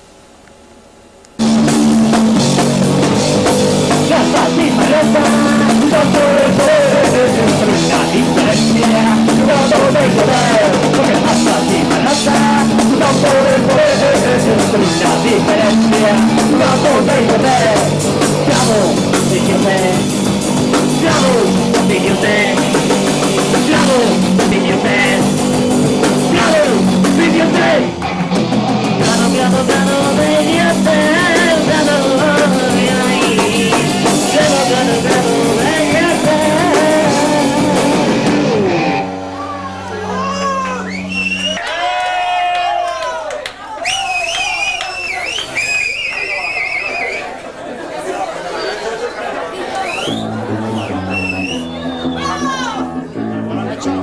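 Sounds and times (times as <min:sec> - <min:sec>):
drum kit: 0:01.4 - 0:41.6
electric guitar: 0:01.4 - 0:41.6
punk rock band playing live: 0:01.4 - 0:41.6, 0:50.1 - 0:54.0.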